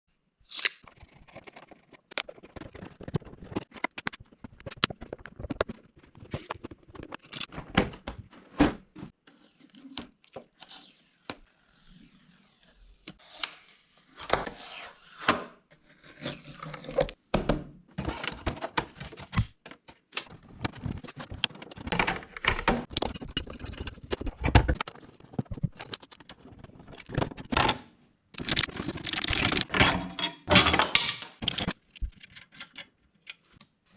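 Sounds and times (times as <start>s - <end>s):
plastic fasteners clicking and knocking: 17.5s - 27.8s, 28.4s - 33.6s.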